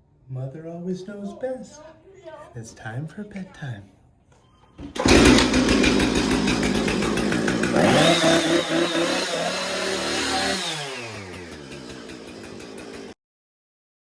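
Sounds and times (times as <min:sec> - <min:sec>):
chainsaw revving: 0:05.0 - 0:13.2.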